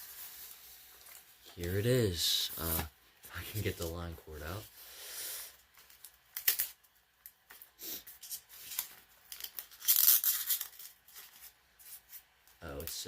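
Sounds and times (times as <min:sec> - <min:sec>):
rustling cardboard and styrofoam: 0:00.0 - 0:04.7.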